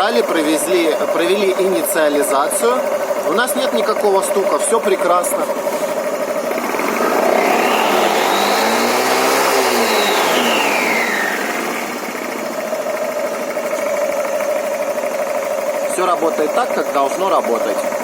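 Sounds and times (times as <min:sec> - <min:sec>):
scooter engine revving and idling: 0:00.0 - 0:18.0.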